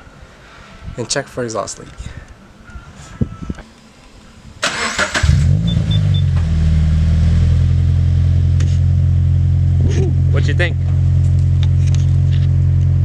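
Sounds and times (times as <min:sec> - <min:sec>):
engine starter cranking: 0:04.6 - 0:06.2.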